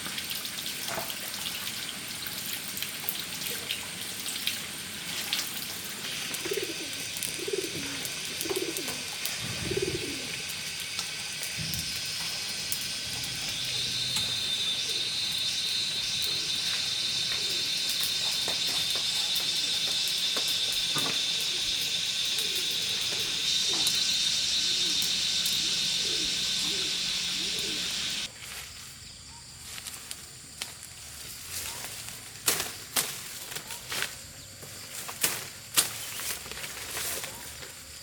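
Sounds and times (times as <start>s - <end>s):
high-pitched hiss: 4.9s - 29.0s
pigeon cooing: 6.1s - 10.8s, 12.5s - 28.3s.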